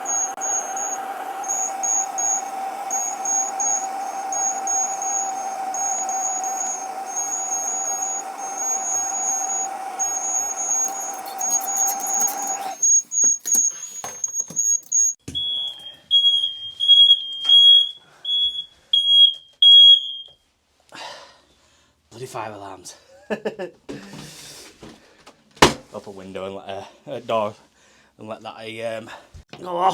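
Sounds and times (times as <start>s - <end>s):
lower-pitched alarm beeping: 0.0s - 20.3s
high-pitched smoke alarm beeping: 0.0s - 20.4s.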